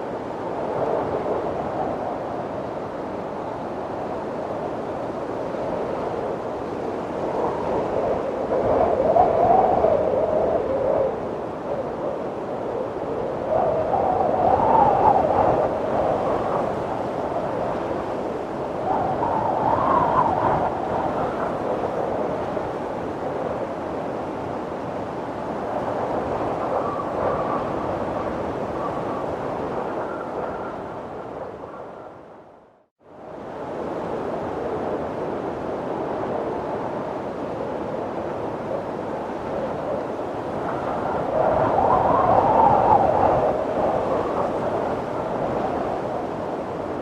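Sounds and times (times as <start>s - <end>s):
faint wavering wind whistle: 0.0s - 47.0s
wind blowing: 0.0s - 47.0s
whistle-like wind tone: 38.7s - 47.0s.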